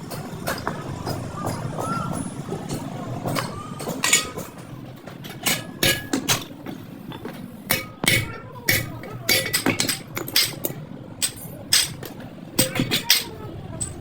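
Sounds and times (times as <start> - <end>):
low traffic rumble: 0.0 - 14.0
tools knocking on metal: 3.2 - 14.0.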